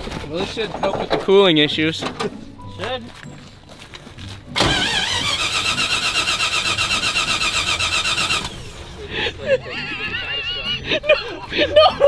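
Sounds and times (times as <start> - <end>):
car engine revving hard: 4.6 - 9.2.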